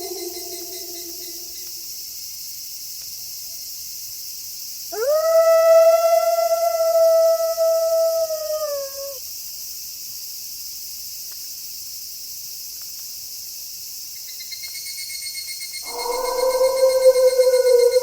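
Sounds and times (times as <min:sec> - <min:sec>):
wolf howling: 0:00.0 - 0:01.7, 0:05.0 - 0:09.2, 0:15.8 - 0:18.0
fast high trill: 0:15.8 - 0:18.0.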